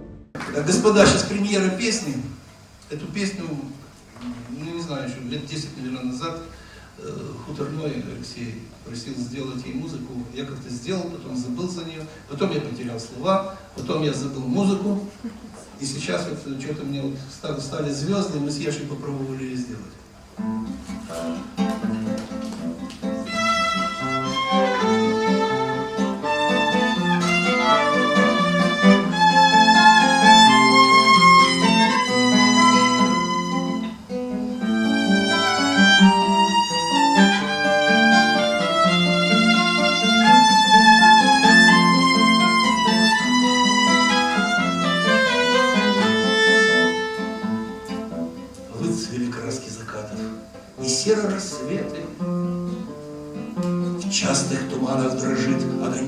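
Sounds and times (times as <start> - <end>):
acoustic guitar accompaniment: 0.0 - 56.0
violin melody: 23.0 - 48.4.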